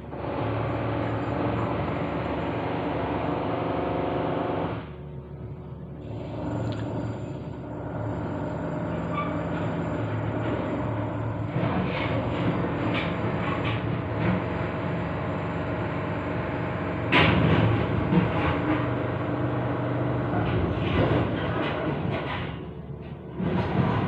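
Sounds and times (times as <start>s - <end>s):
machinery humming: 0.0s - 24.0s
rattles and clanks: 8.9s - 14.9s, 17.0s - 19.4s, 20.2s - 24.0s.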